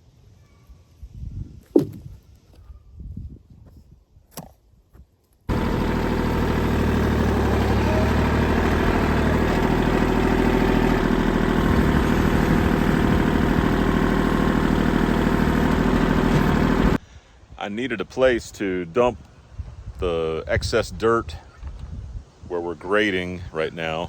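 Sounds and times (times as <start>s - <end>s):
large engine running steadily: 5.5s - 17.0s.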